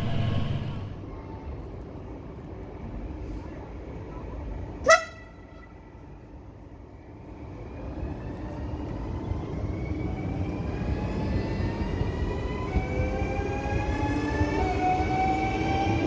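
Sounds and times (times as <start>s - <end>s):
electric train motor whine: 0.0s - 1.1s
rail rumble: 0.0s - 1.4s.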